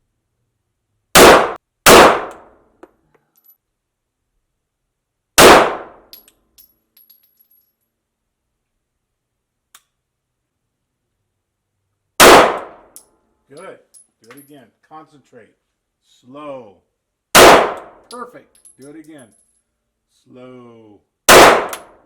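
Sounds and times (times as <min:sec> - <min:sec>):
pistol shots echoing indoors: 0:01.2 - 0:02.6, 0:05.4 - 0:06.1, 0:12.2 - 0:12.9, 0:17.4 - 0:18.0, 0:21.3 - 0:22.0.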